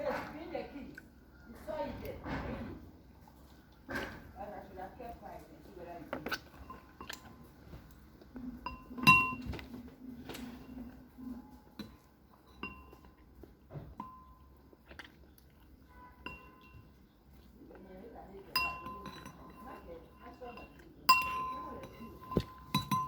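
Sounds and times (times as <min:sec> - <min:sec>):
low steady hum: 0:02.8 - 0:23.0
utensils clinking against dishes: 0:08.6 - 0:09.7, 0:11.8 - 0:13.2, 0:18.5 - 0:23.0.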